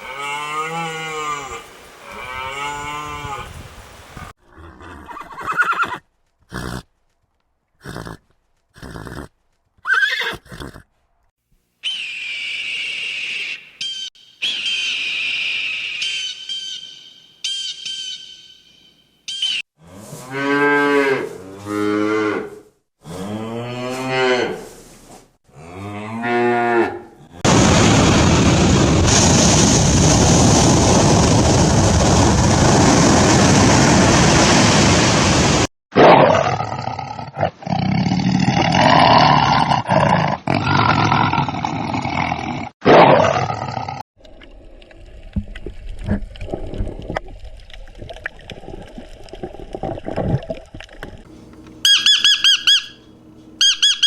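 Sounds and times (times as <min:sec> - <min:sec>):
irregular animal calls: 0:11.8 - 0:19.6, 0:51.4 - 0:54.0
loud rushing noise: 0:27.5 - 0:35.7.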